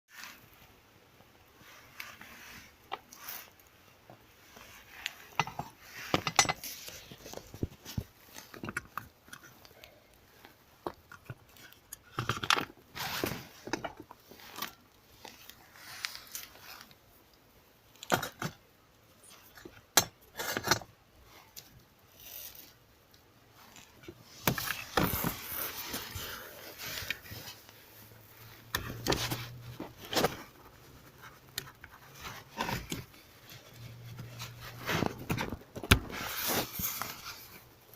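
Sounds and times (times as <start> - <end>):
hard parts clicking and knocking: 5.3 - 9.7.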